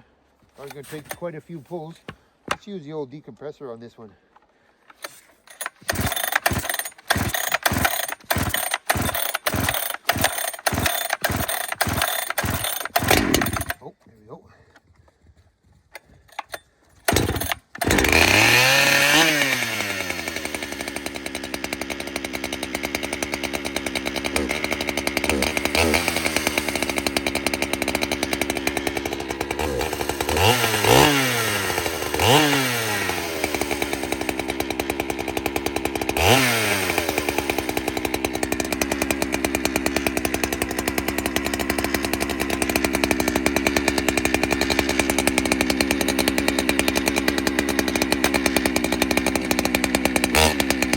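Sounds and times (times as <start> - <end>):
chainsaw engine starting and revving: 0.6 - 2.8, 4.2 - 13.9, 16.1 - 50.9.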